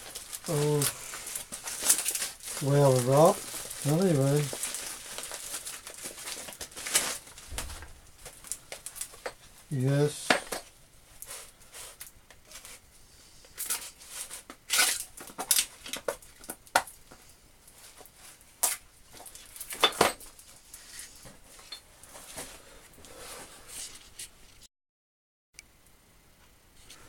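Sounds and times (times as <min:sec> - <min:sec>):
packaging tape ripping: 0:00.0 - 0:07.7
wrapping crinkling: 0:00.0 - 0:12.8, 0:13.6 - 0:22.4.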